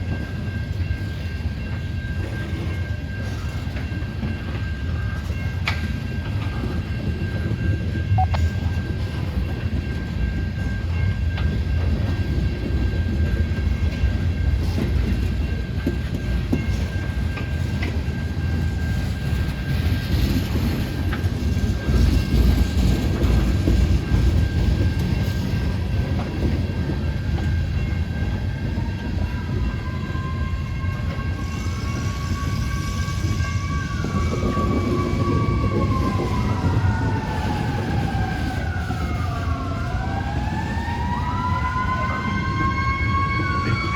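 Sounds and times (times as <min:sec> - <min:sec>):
freight train rumbling past: 0:00.0 - 0:43.9
siren wavering: 0:28.8 - 0:43.9.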